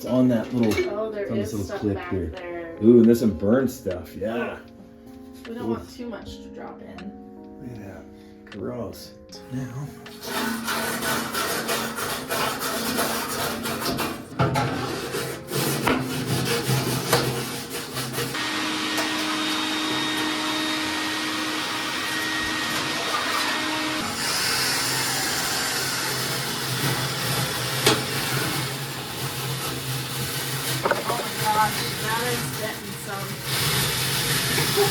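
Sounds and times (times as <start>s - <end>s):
vacuum cleaner running: 10.1s - 11.7s, 13.8s - 34.9s.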